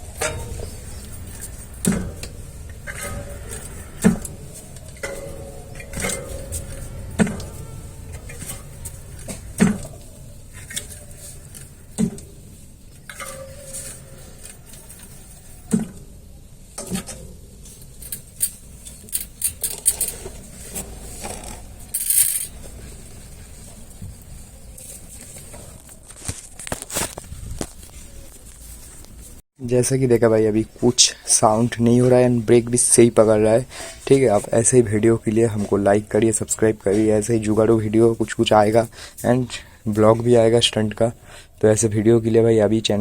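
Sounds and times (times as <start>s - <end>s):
bike metallic clicks and knocks: 0.2s - 12.3s, 16.8s - 22.6s.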